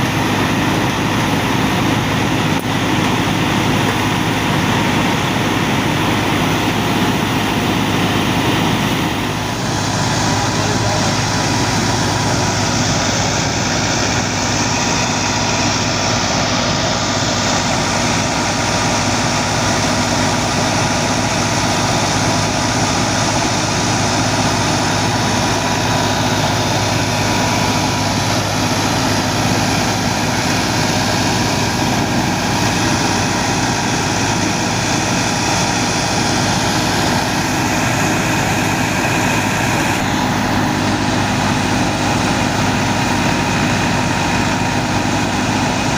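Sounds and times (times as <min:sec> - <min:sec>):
tractor diesel engine running: 0:00.0 - 0:45.9
wheat thresher noise: 0:00.0 - 0:45.9.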